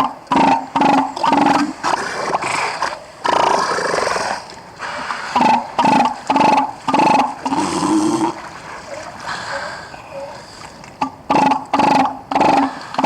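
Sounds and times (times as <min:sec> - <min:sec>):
elephant seal belching: 0:00.0 - 0:13.0.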